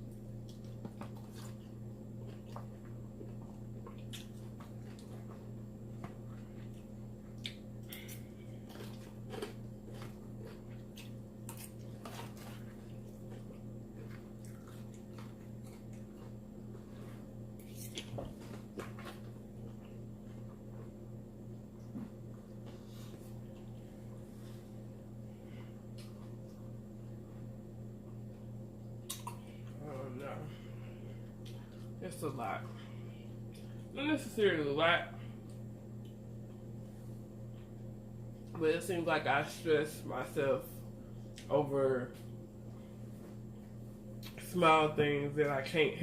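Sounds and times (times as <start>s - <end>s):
crunching and chewing salad: 0.0s - 34.4s, 35.0s - 38.6s, 39.4s - 44.6s
steady low hum: 0.0s - 46.0s.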